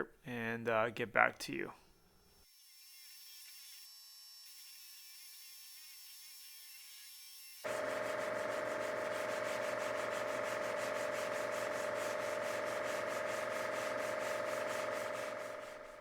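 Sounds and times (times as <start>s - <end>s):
sandpaper rasping on filler: 7.7s - 16.0s.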